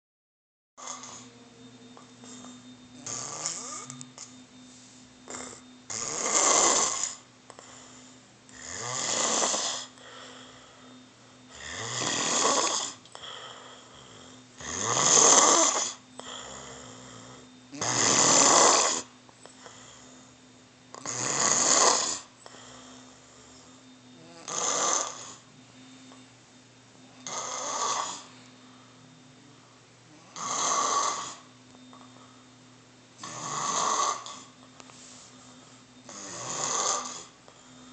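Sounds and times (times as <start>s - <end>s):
person snoring: 0.8s - 1.5s, 2.2s - 4.3s, 5.2s - 25.5s, 27.2s - 31.5s, 33.2s - 34.6s, 36.0s - 37.9s.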